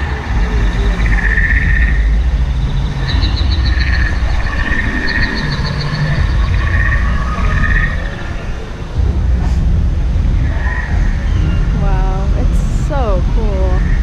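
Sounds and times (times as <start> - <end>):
steady low rumble: 0.0 - 14.0
frog-like chirping trills: 0.4 - 8.4.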